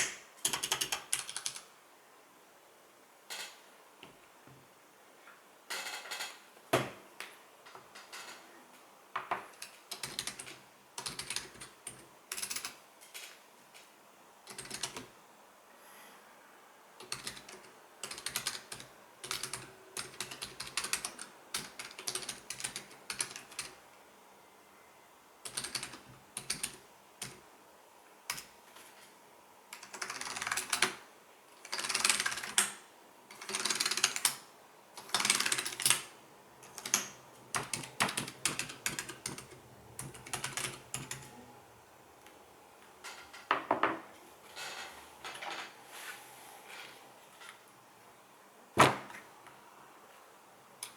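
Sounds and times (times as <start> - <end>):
mechanical keyboard typing: 0.0 - 1.7, 9.5 - 12.8, 14.4 - 15.1, 17.0 - 23.8, 25.4 - 27.4, 29.7 - 31.0, 31.6 - 34.4, 35.0 - 41.3.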